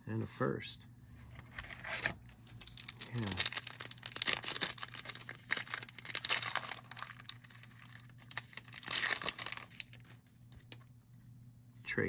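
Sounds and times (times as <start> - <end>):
plastic wrapper crinkling: 1.5 - 10.9.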